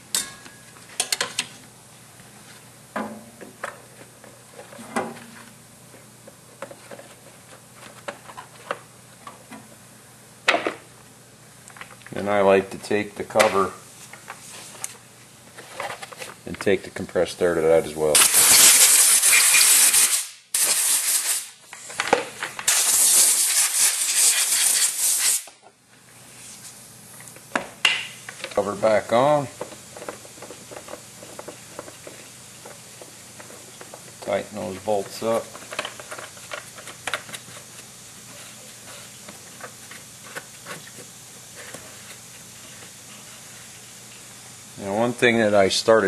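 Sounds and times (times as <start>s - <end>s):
steady background hiss: 0.0s - 46.0s
compressed air blow gun hissing: 22.7s - 25.5s.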